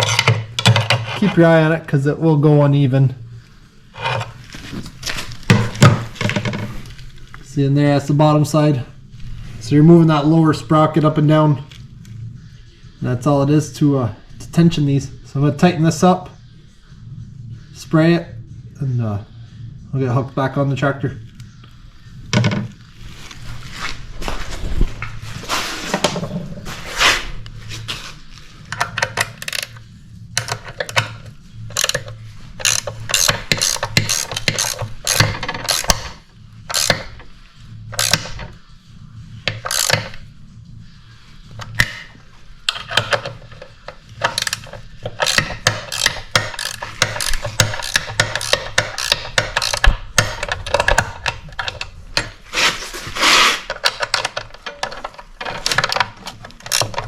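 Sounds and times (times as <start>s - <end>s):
steady low hum: 0.0s - 57.0s
ratchet wrench clicking: 30.4s - 37.2s, 37.9s - 38.4s, 39.5s - 40.2s, 44.2s - 52.4s.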